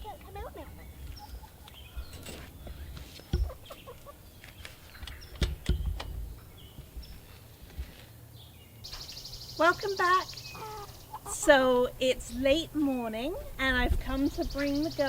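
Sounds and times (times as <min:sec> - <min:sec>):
hens clucking softly: 0:00.1 - 0:04.2, 0:10.6 - 0:11.6.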